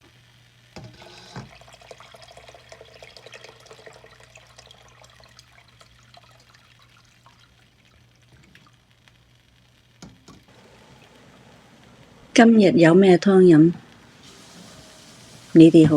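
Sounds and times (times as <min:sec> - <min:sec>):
water pouring and splashing: 0:01.4 - 0:08.8, 0:10.5 - 0:12.3, 0:13.6 - 0:15.9
water dripping: 0:01.5 - 0:09.2, 0:10.0 - 0:15.9.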